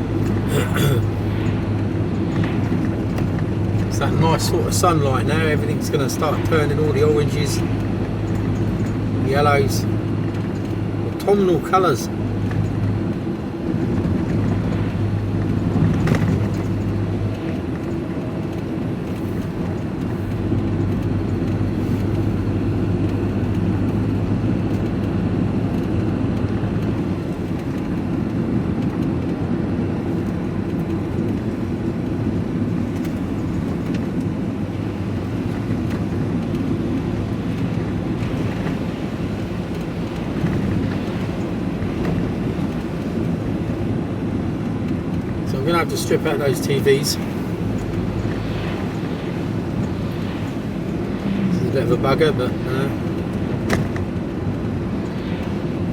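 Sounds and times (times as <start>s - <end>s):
diesel engine and road noise: 0.0s - 55.9s.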